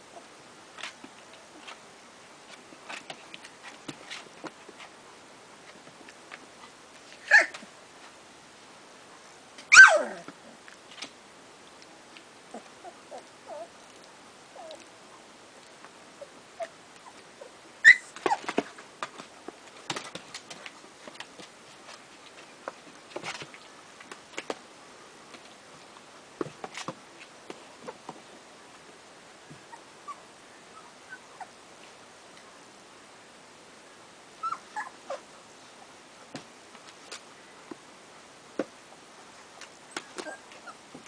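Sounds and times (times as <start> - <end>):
puppy yelping: 7.3 - 7.6, 9.7 - 10.3, 17.8 - 18.5, 34.4 - 35.2
puppies squeaking and whimpering: 17.8 - 18.5, 34.4 - 35.2.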